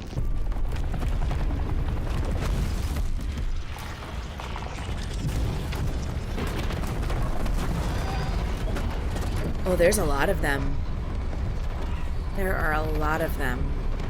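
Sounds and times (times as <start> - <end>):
rapid clicking and crackling: 0.0 - 9.8
deep steady rumble: 5.2 - 14.0.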